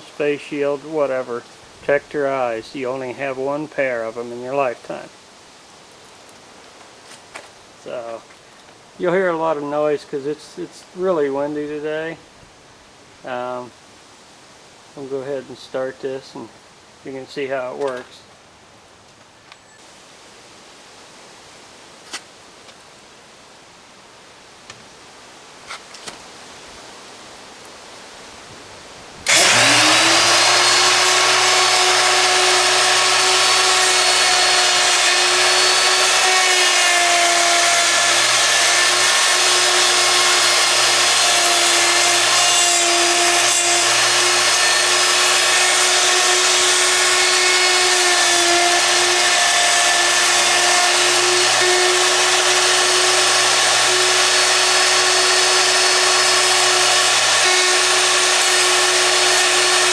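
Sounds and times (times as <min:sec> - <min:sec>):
electric router cutting wood: 0:29.2 - 0:59.9.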